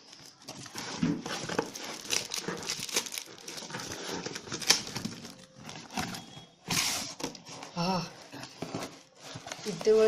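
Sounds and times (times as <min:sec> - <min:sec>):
packaging tearing and crinkling: 0:00.0 - 0:07.7.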